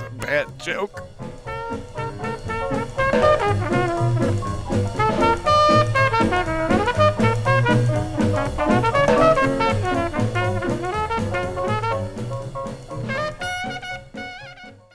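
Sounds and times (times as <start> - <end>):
brass band jazz music: 0.0 - 14.9.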